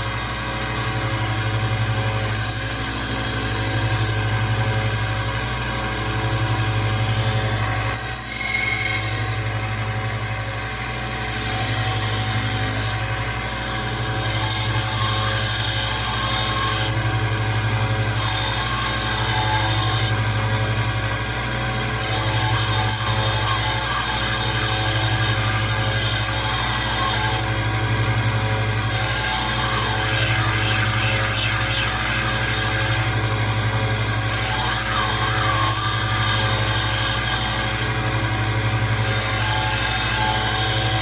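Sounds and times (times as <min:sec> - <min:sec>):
belt sander running: 0:00.0 - 0:41.0
steel grinding on abrasive belt: 0:22.0 - 0:41.0.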